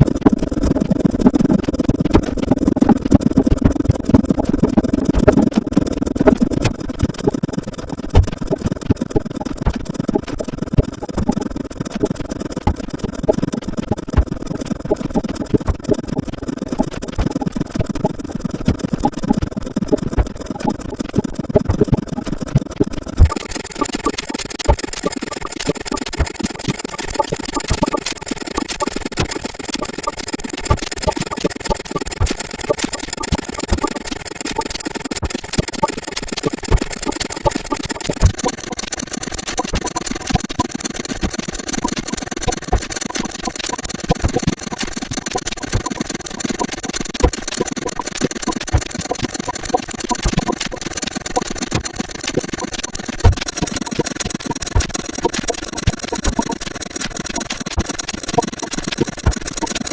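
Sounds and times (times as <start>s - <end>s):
rapid clicks clattering: 0.0s - 59.9s.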